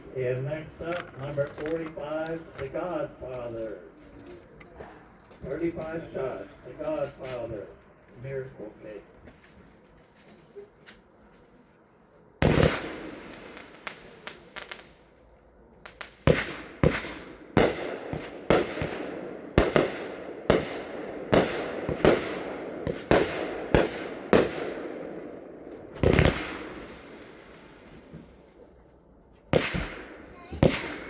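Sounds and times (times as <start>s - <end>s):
small firework pops: 12.4s - 15.0s, 15.8s - 19.0s, 29.5s - 31.0s
firework cake shots: 12.4s - 15.1s, 15.8s - 24.8s, 25.8s - 28.3s, 29.6s - 31.0s.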